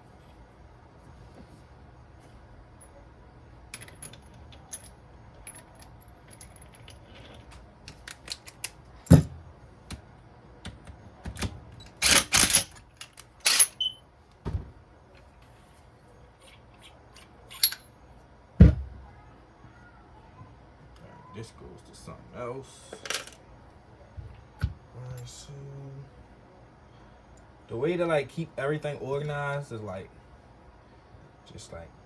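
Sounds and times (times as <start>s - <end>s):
metal tools clinking: 11.8s - 14.0s, 16.4s - 17.9s.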